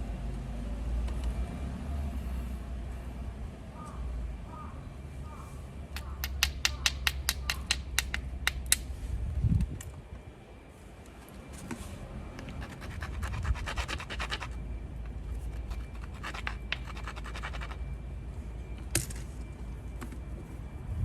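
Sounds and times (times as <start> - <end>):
stone clicking on stone: 6.0 - 8.9.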